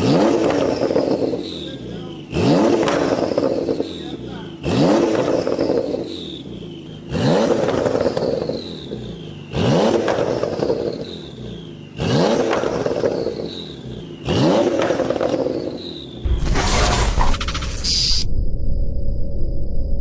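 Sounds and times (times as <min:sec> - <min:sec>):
car engine revving in blips: 0:00.0 - 0:18.3.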